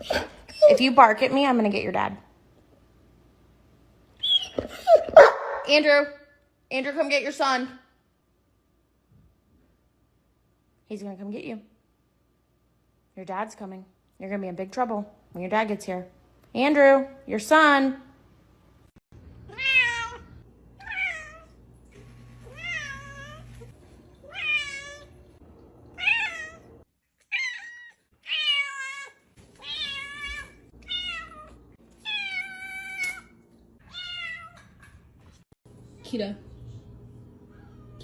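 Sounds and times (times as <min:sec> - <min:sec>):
cat meowing: 0:19.5 - 0:21.6, 0:22.5 - 0:23.6, 0:24.3 - 0:25.2, 0:27.3 - 0:33.2, 0:33.8 - 0:34.6.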